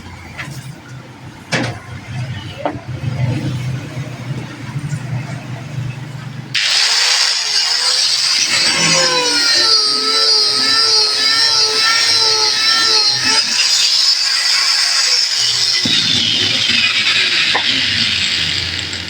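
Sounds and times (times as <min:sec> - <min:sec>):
angle grinder grinding: 0:06.6 - 0:19.0.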